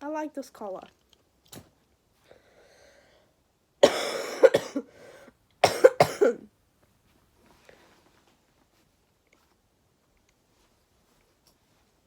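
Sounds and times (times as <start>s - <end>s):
person coughing: 3.8s - 5.0s, 5.6s - 6.5s.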